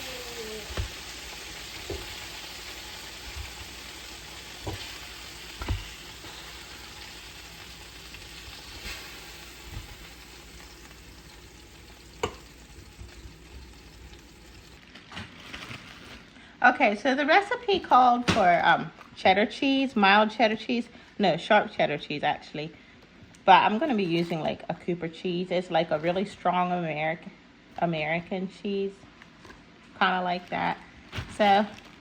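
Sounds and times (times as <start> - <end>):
chicken frying in oil: 0.0 - 14.8.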